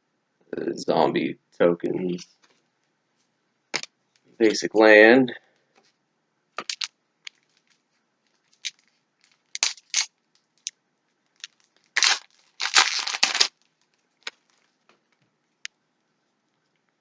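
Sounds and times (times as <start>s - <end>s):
foil wrapper tearing: 6.6s - 7.8s, 8.4s - 10.1s, 11.4s - 14.7s
foil wrapper crinkling: 6.6s - 10.7s, 11.4s - 14.9s.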